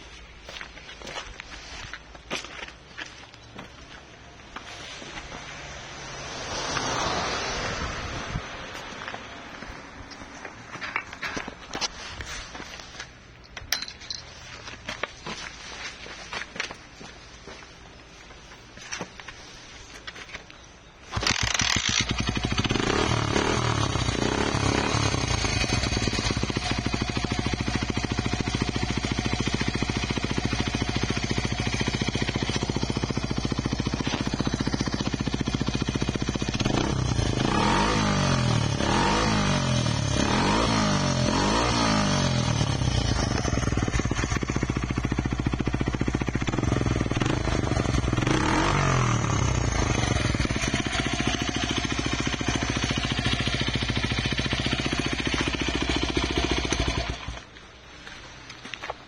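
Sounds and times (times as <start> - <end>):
motorcycle engine idling: 21.2 - 58.2.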